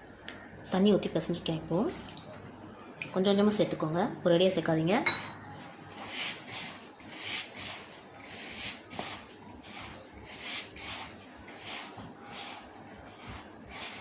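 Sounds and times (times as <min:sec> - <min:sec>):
hands kneading dough: 0:05.3 - 0:14.0.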